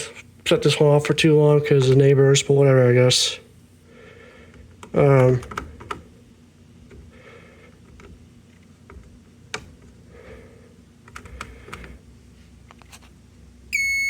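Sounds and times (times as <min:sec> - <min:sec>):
high-pitched alarm tone: 0:13.8 - 0:14.0.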